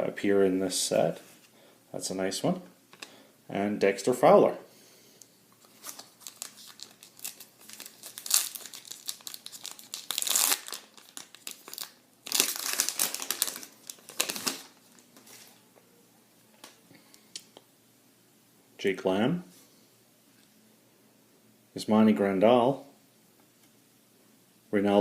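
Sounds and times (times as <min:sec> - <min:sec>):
foil wrapper crinkling and tearing: 0:05.6 - 0:14.8.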